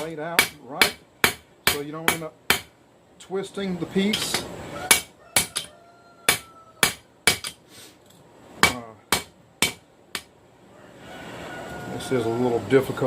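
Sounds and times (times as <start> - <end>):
hammer striking hot steel on anvil: 0.0 - 2.7, 4.1 - 5.7, 6.3 - 7.6, 8.6 - 10.3.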